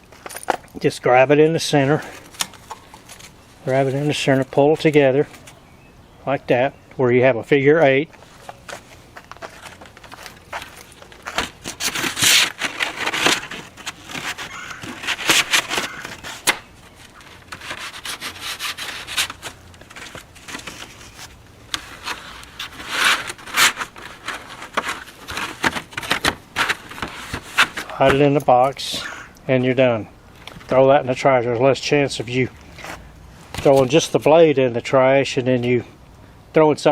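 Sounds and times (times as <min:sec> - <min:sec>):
bandsaw blade scraping: 0:11.7 - 0:19.6, 0:20.4 - 0:25.0.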